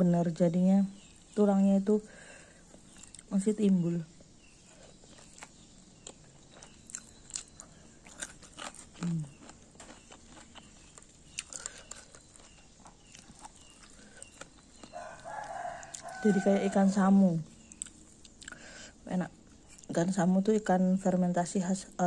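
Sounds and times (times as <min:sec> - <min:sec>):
person chewing food: 0:02.2 - 0:03.3, 0:04.2 - 0:16.3, 0:17.5 - 0:19.9.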